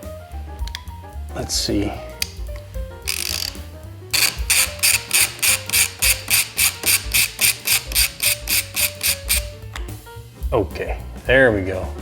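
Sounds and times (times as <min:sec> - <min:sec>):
ratchet wrench clicking: 0:02.2 - 0:09.9.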